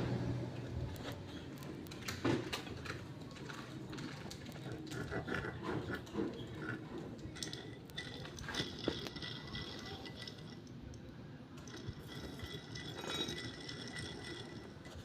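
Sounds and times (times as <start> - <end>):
metallic clinks of tools: 11.6 - 15.0.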